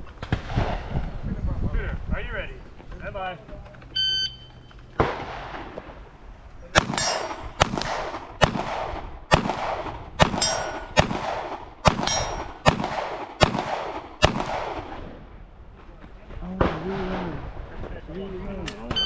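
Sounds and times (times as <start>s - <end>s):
handgun shots: 6.8s - 14.8s
ringing gunshot echo: 6.8s - 15.0s.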